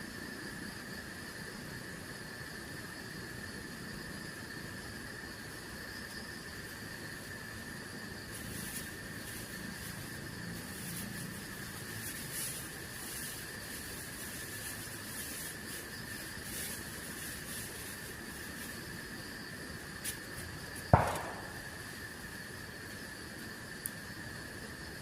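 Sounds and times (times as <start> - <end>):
forest insect chorus: 0.0 - 25.0
sharp ringing knock: 21.0 - 21.8.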